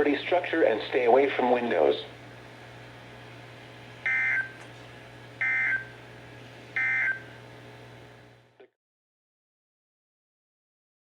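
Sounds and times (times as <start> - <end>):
low steady hum: 0.0 - 8.6.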